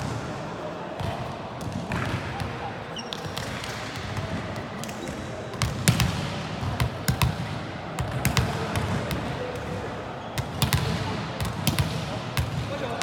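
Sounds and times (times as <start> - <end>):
background hubbub: 0.0 - 13.0
volleyballs smacking and bouncing: 1.0 - 2.6, 3.2 - 9.8, 10.4 - 13.0.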